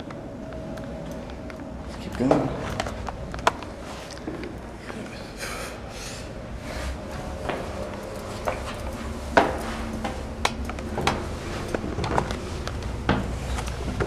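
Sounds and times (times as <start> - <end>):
steady low rumble: 0.0 - 14.0
footsteps climbing stairs: 6.3 - 14.0.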